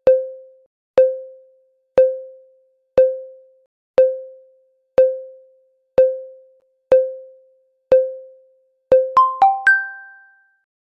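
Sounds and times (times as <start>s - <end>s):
electronic tick-tone: 0.1s - 10.6s
high chime note: 9.2s - 10.4s.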